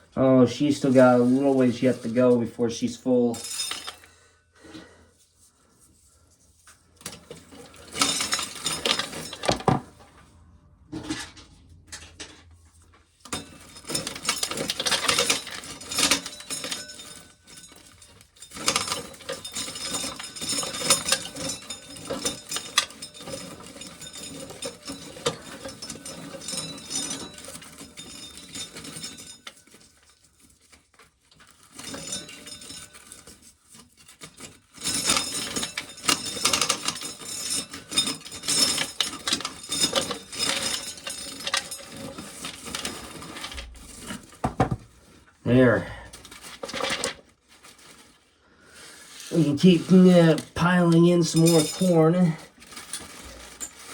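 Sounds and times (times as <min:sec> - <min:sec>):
corn kernels rattling into a tub: 0:00.2 - 0:03.9, 0:49.0 - 0:53.9.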